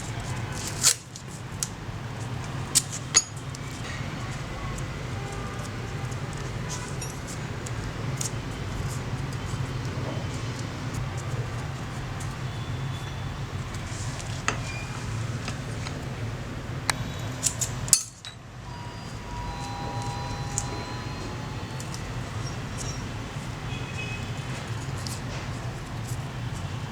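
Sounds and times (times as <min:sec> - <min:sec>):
steel tools clinking: 0:02.8 - 0:03.5
steady low hum: 0:18.6 - 0:26.9.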